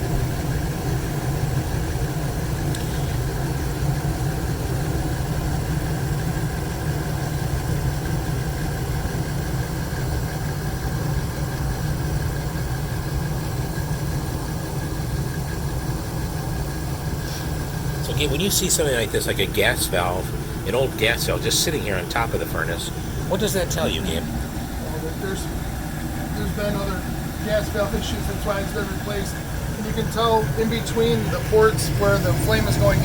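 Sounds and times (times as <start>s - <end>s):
blower motor low rumble: 0.0s - 33.0s
gas burners firing: 15.6s - 33.0s.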